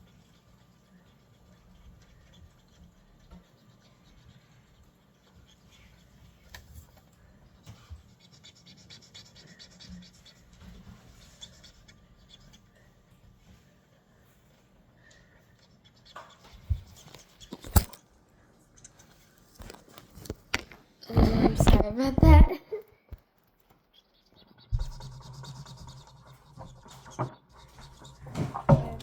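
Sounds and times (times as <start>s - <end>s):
felt-tip marker scratching on paper: 0.0s - 6.7s, 7.5s - 13.1s, 24.7s - 28.9s.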